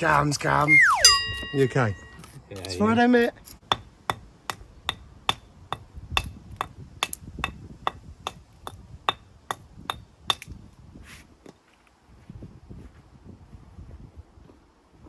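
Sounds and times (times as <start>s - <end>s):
hammer blows with metallic ring: 0.7s - 2.3s.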